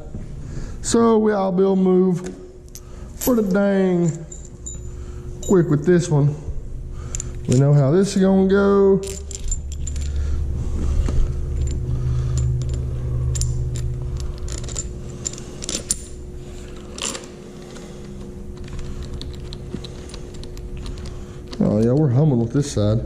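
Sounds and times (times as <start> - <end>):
low hum: 0.0 - 23.0
tools and fasteners clinking: 2.7 - 5.9, 7.1 - 7.8, 9.0 - 10.3, 11.0 - 17.4, 18.0 - 22.5.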